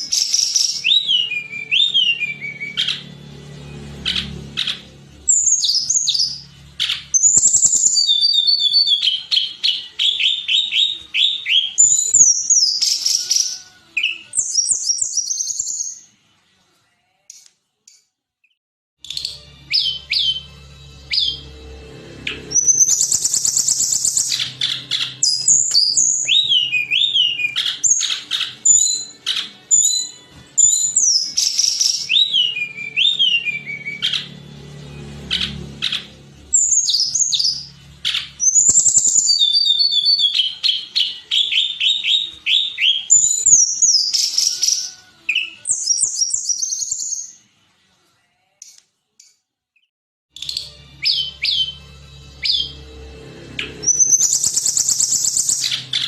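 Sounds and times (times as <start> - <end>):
bird whistling and trilling: 0.0 - 3.0, 4.1 - 16.0, 22.5 - 34.3, 35.3 - 47.4, 53.8 - 56.0.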